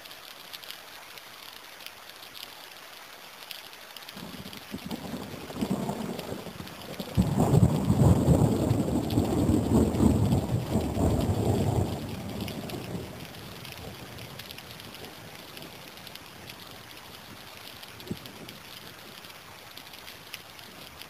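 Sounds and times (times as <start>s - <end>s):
steady rain hiss: 0.0s - 21.0s
thunder rumbling: 4.2s - 19.3s.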